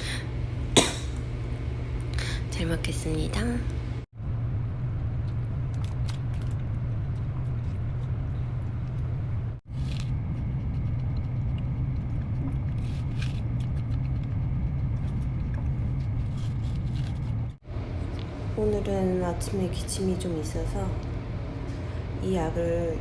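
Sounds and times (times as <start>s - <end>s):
ventilation hum: 0.0s - 23.0s
utensils tapping on tray: 0.8s - 1.2s.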